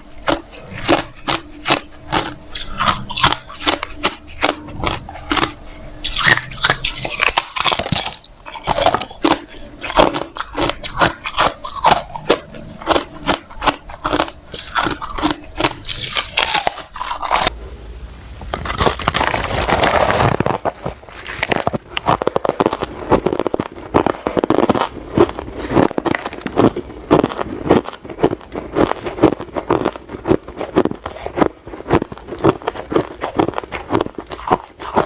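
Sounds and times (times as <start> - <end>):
ice being chewed crunching: 0.0 - 17.6, 18.4 - 35.0
dense continuous crackling: 14.0 - 35.0.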